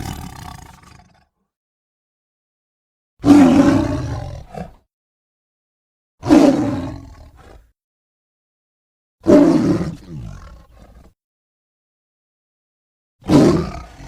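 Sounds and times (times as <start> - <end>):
tiger roaring: 0.0 - 1.3, 3.2 - 4.8, 6.2 - 7.7, 9.2 - 11.1, 13.2 - 14.0.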